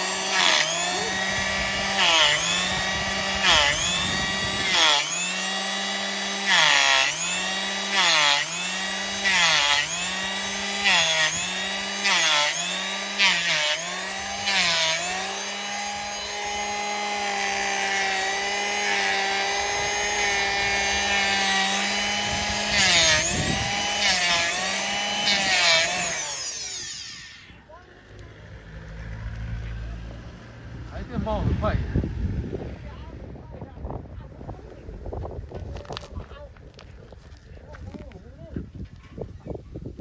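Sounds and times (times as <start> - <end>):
power tool motor whine: 0.0 - 27.6.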